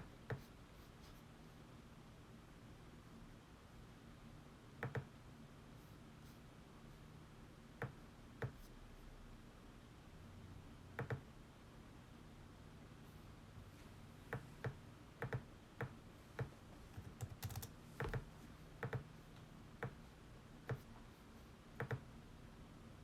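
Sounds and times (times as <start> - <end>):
computer keys clicking: 14.6 - 19.0, 21.8 - 22.0.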